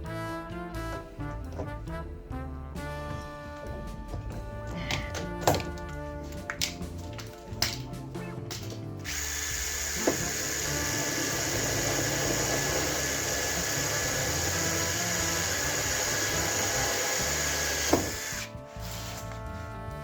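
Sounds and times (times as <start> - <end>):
background music: 0.0 - 20.0
power tool whining: 9.0 - 18.6.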